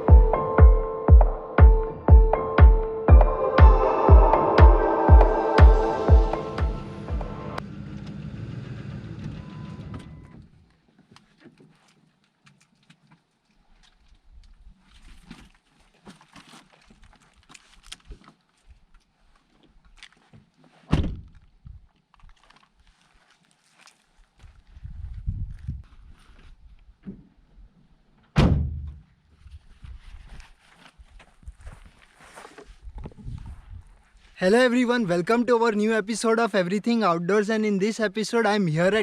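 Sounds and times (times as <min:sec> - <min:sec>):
electronic intro music: 0:00.0 - 0:07.6
loud thump: 0:28.4 - 0:29.1.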